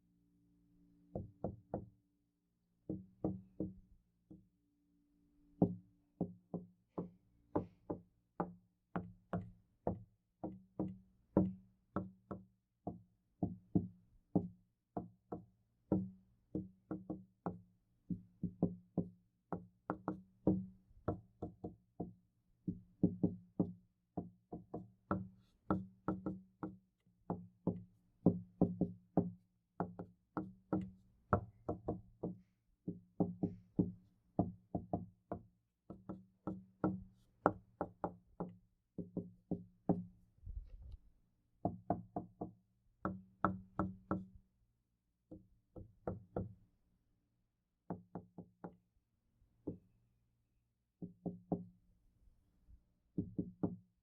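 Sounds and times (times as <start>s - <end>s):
knocking on a door: 1.2s - 2.0s, 2.9s - 3.8s, 5.6s - 17.6s, 22.7s - 40.1s, 47.9s - 48.8s, 53.2s - 53.8s.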